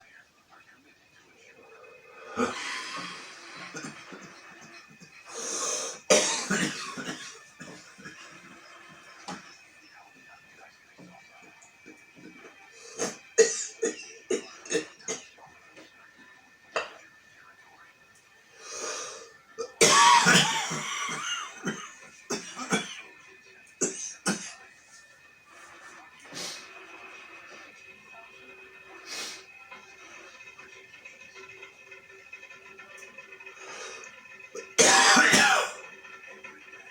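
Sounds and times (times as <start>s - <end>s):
long drawn-in breath: 1.6s - 6.0s, 18.6s - 19.4s, 28.9s - 30.3s, 33.6s - 34.2s
man coughing: 2.3s - 8.4s, 13.0s - 15.3s, 19.6s - 23.1s, 23.8s - 24.6s, 34.6s - 35.8s.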